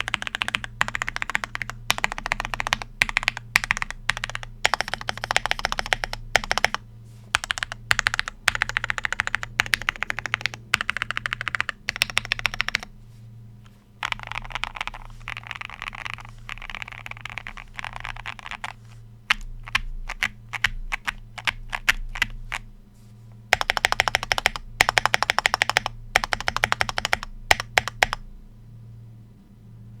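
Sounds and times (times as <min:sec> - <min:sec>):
mechanical keyboard typing: 0:00.0 - 0:12.9, 0:14.0 - 0:22.7, 0:23.5 - 0:28.2.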